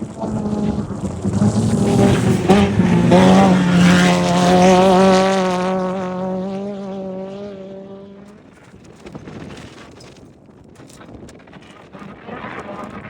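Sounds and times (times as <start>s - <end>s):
race vehicle engine passing: 0.0s - 8.3s
tyre and dirt noise: 0.0s - 13.0s.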